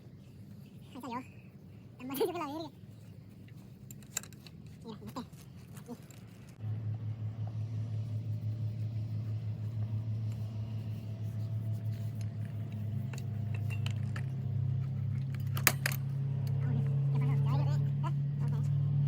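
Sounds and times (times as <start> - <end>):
engine pulsing hum: 5.1 - 19.0.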